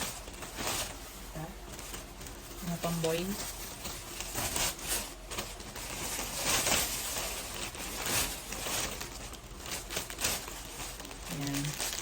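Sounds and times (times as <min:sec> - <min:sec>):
plastic packaging crinkling: 0:00.0 - 0:12.0.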